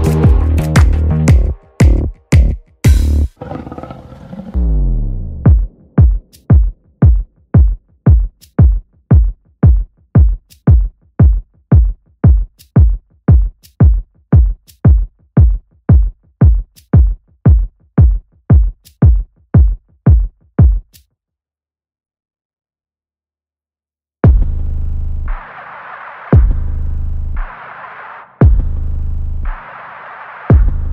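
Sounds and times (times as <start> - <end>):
kick drum beat: 0.0 - 3.2, 5.5 - 21.0, 24.2 - 24.4, 26.3 - 26.6, 28.4 - 28.7, 30.5 - 30.8
electronic dance music: 0.0 - 3.3.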